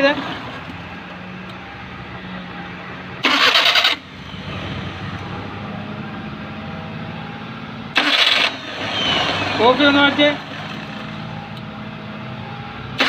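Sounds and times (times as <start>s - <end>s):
car engine running: 0.0s - 13.0s
starter motor grinding: 3.2s - 4.0s, 8.0s - 11.2s.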